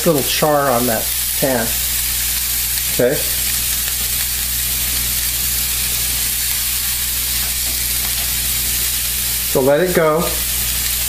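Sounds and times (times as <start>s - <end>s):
vegetables sizzling in a pan: 0.0s - 11.0s.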